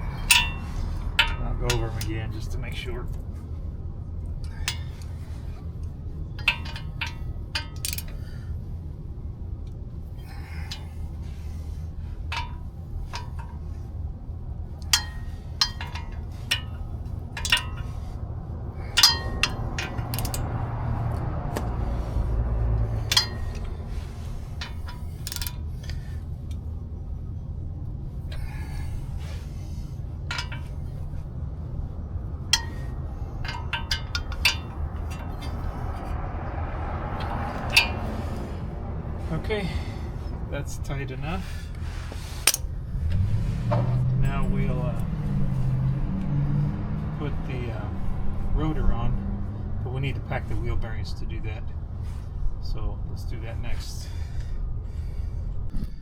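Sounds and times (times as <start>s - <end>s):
ratchet clicking on nuts: 0.0s - 2.6s, 4.5s - 8.4s, 14.7s - 18.2s, 18.9s - 21.3s, 22.8s - 26.2s, 32.3s - 38.5s, 42.4s - 42.7s
low rumble: 0.0s - 56.0s
steady low hum: 0.0s - 56.0s.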